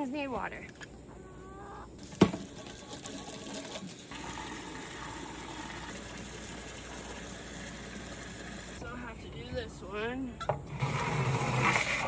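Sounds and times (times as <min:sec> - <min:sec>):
water running into a container: 0:02.0 - 0:08.8.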